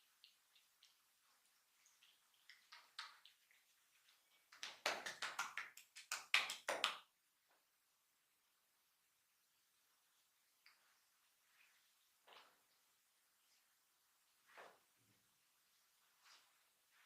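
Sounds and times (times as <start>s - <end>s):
hands tapping during massage: 4.5s - 7.1s.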